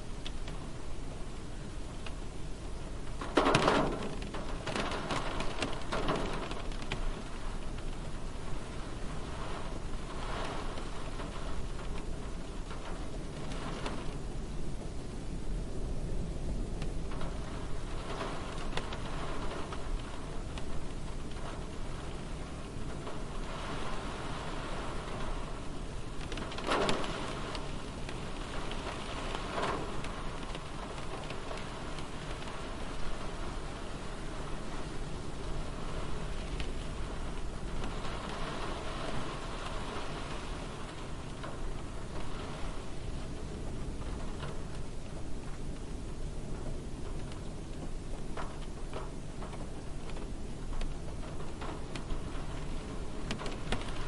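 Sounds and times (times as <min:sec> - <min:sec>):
rain on car roof: 0:00.0 - 0:54.0.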